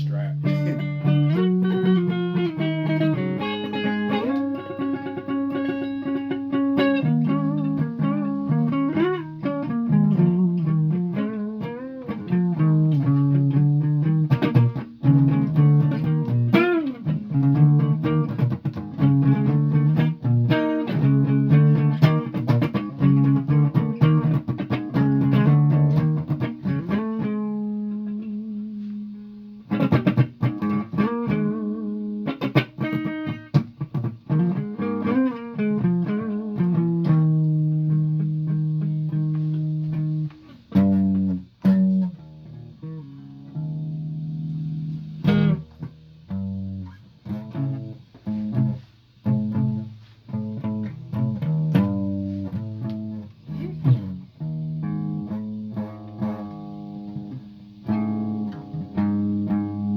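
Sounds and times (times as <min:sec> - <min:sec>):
guitar plucked notes: 0:00.0 - 0:59.9.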